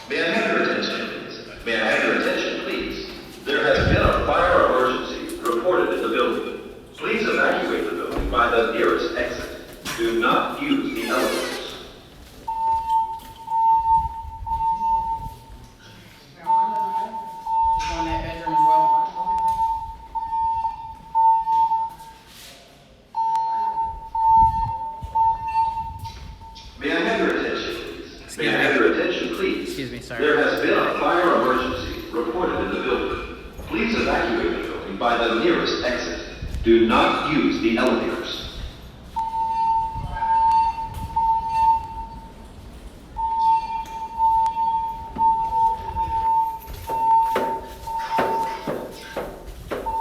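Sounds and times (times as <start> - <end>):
fire alarm beeps: 3.7 - 15.6, 16.4 - 22.5, 23.1 - 26.8, 38.0 - 50.0.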